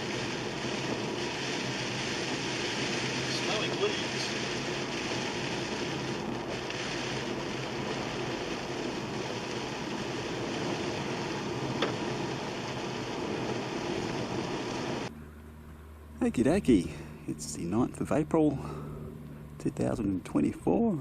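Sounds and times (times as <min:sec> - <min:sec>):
hail falling: 0:00.0 - 0:15.1.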